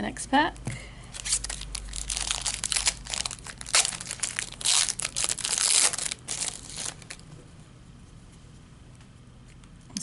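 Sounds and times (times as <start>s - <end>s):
wrapper tearing and crinkling: 1.1s - 7.2s.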